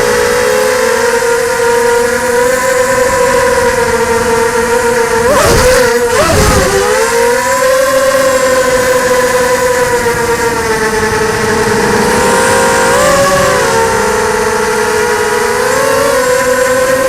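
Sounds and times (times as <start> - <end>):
quadcopter motors whining: 0.0 - 17.0.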